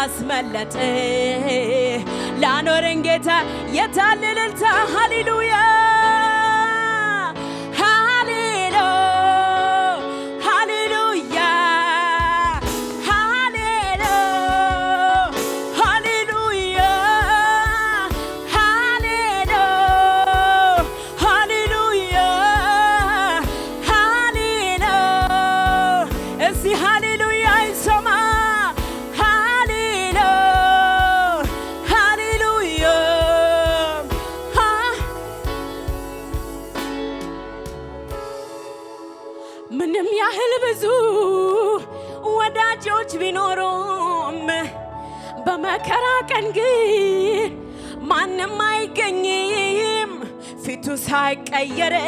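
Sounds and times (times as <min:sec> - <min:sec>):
person singing with vibrato: 0:00.0 - 0:36.9
band playing steady beat: 0:12.2 - 0:39.0.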